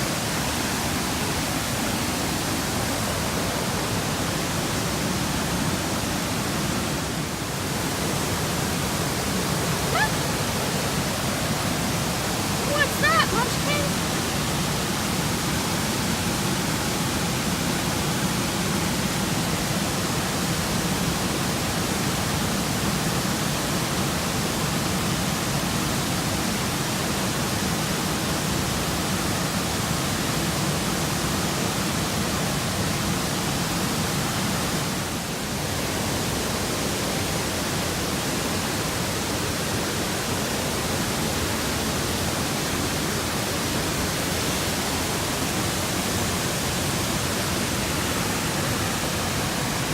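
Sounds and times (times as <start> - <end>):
waterfall rushing: 0.0 - 49.9.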